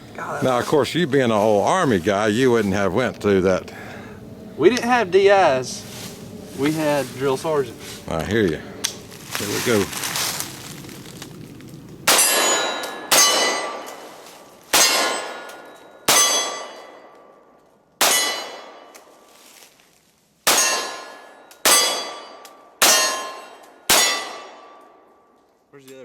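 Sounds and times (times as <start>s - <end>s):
pistol shots: 12.0s - 14.1s, 14.7s - 17.1s, 18.0s - 18.9s, 20.4s - 24.8s
steel target ringing: 12.1s - 17.1s, 18.0s - 18.9s, 20.5s - 24.8s.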